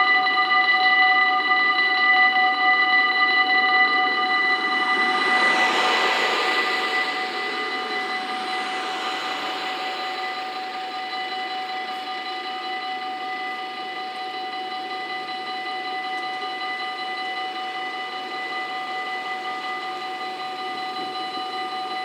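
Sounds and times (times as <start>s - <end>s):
level-crossing warning bells: 0.0s - 22.0s
electric train rushing past: 2.2s - 12.6s.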